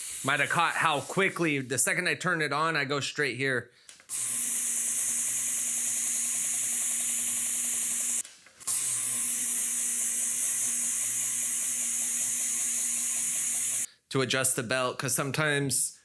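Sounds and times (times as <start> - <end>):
grinder motor hum: 4.2 - 13.9.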